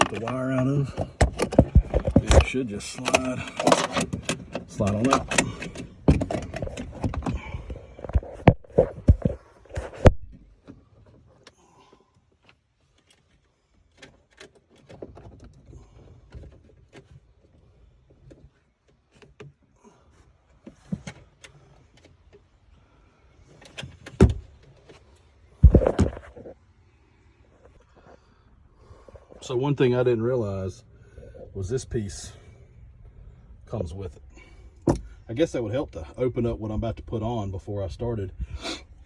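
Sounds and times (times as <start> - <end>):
plastic and metal parts clicking: 0.0 - 7.4.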